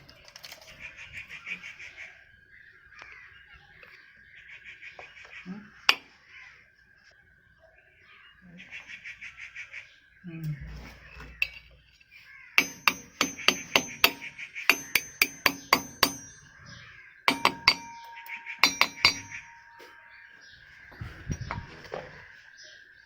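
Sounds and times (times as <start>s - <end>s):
hammer tapping on metal: 12.6s - 16.7s, 17.3s - 22.0s.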